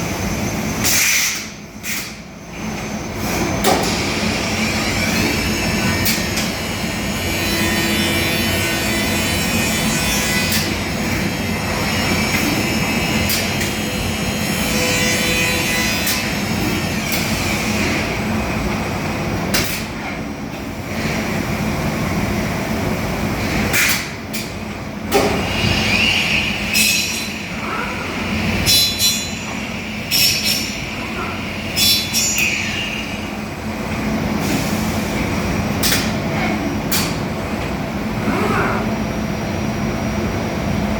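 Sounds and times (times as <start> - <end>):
cnc machine running: 2.4 - 19.3.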